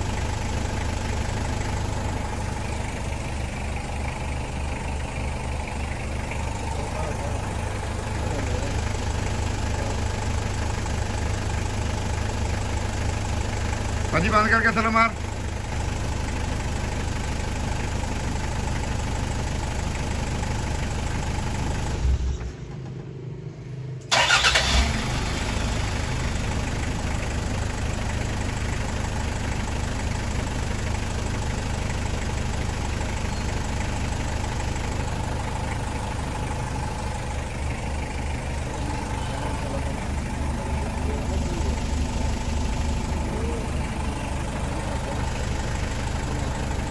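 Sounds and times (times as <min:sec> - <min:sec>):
diesel engine idling: 0:00.0 - 0:22.7, 0:23.5 - 0:46.9
engine cranking and starting: 0:24.1 - 0:26.7, 0:35.2 - 0:46.9.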